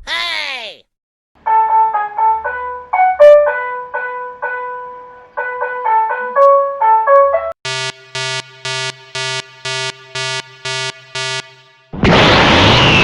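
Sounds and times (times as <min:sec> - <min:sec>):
melodic multi-tone horn: 0:07.6 - 0:12.0
even electronic beeping: 0:07.6 - 0:13.0.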